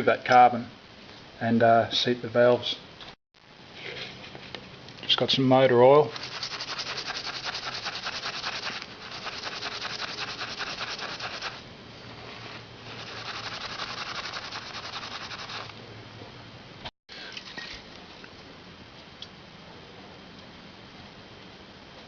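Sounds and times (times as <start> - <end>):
scrubbing on metal valve: 6.1 - 11.6, 12.9 - 15.7.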